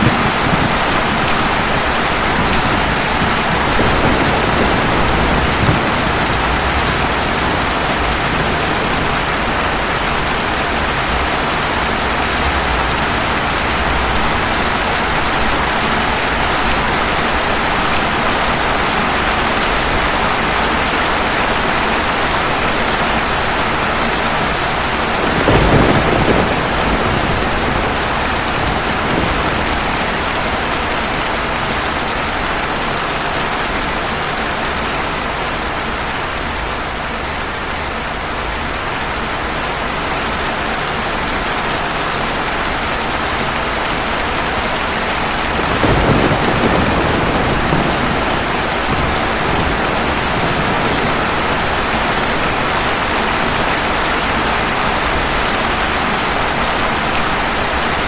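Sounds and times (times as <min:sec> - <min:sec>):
thunder rumble: 0:00.0 - 0:18.8, 0:22.1 - 0:32.3, 0:44.9 - 0:55.3
heavy rain on pavement: 0:00.0 - 0:58.0.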